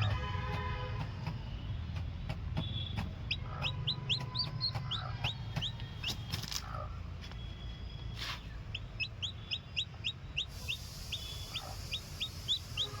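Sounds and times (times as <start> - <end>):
chick peeping: 3.0 - 6.9, 8.7 - 13.0.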